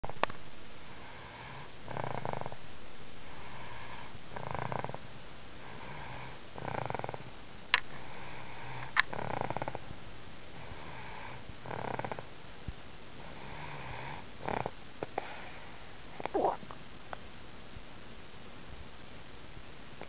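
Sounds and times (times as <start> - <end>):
baby snoring: 1.2 - 2.6, 5.7 - 7.2, 8.1 - 9.8, 16.2 - 16.6.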